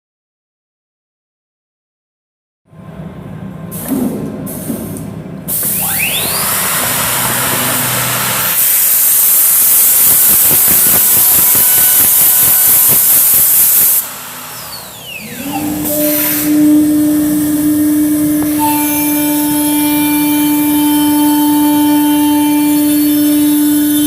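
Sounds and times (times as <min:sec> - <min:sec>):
loud rushing hiss: 0:05.5 - 0:15.2
machine motor whine: 0:05.5 - 0:24.0.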